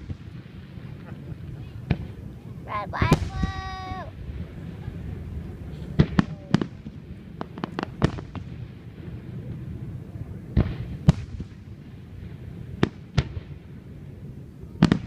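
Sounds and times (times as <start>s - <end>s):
fireworks bangs: 0.0s - 9.2s.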